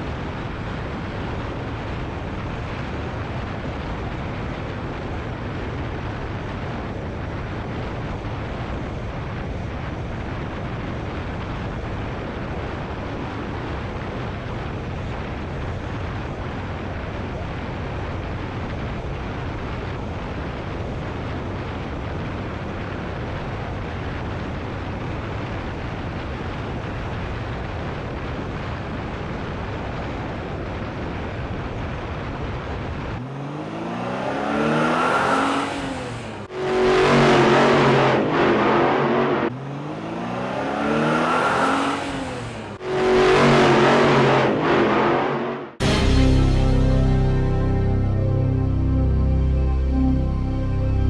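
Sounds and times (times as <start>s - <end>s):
rushing road noise: 30.0s - 51.0s
racing car engine revving: 33.2s - 51.0s.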